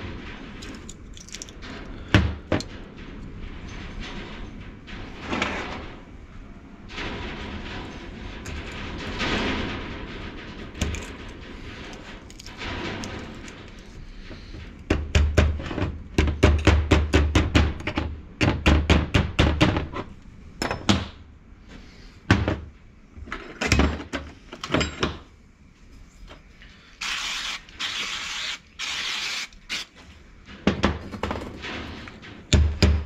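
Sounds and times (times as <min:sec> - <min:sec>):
short hiss bursts: 0:27.0 - 0:29.9.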